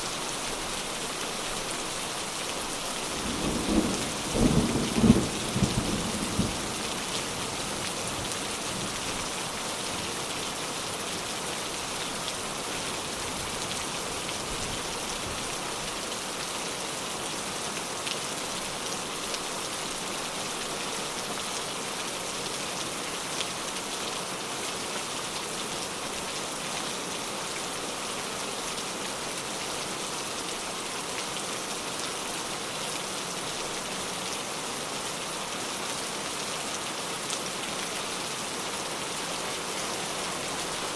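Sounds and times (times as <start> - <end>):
rain pattering: 0.1 - 40.9.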